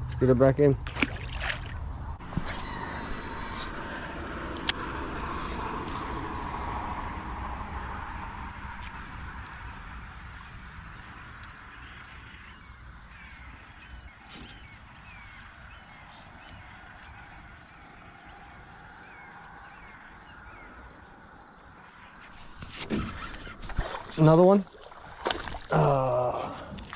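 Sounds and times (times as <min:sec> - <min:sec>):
high-pitched insect drone: 0:01.7 - 0:24.4
birds chirping: 0:07.0 - 0:26.9.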